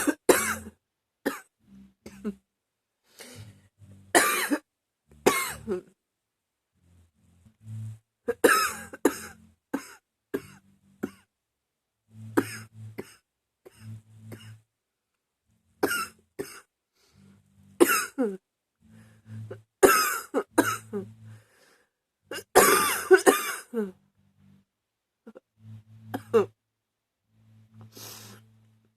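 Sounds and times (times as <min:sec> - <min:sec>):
woman coughing: 0:00.0 - 0:01.5, 0:04.2 - 0:04.6, 0:05.3 - 0:05.9, 0:08.3 - 0:11.2, 0:15.8 - 0:16.7, 0:17.8 - 0:18.4, 0:19.8 - 0:21.1, 0:22.3 - 0:23.9, 0:26.1 - 0:26.6.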